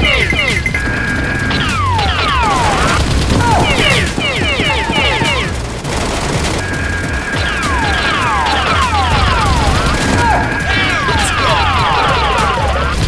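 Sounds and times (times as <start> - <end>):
blaster fire sound effects: 0.0 - 13.0.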